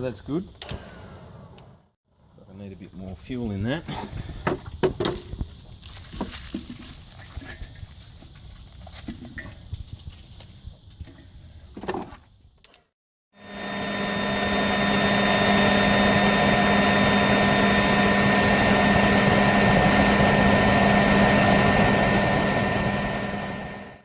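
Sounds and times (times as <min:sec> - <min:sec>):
leaf blower whirring: 0:13.4 - 0:24.0.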